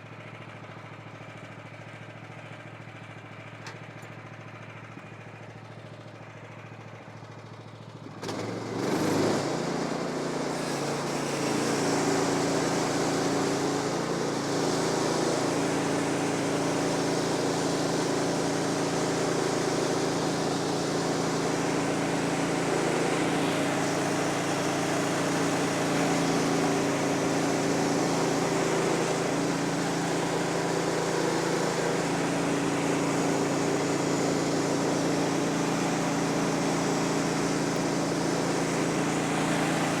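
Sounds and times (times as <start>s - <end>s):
sawmill gasoline engine revving: 8.0s - 40.0s.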